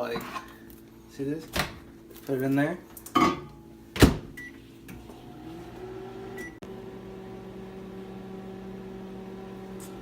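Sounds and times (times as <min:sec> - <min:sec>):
microwave oven running: 0:03.3 - 0:10.0.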